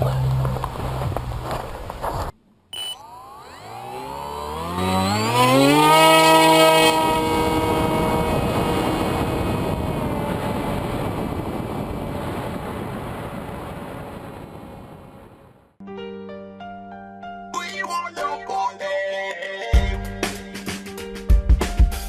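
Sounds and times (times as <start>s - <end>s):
electric motor and propeller whine: 0.0s - 15.6s.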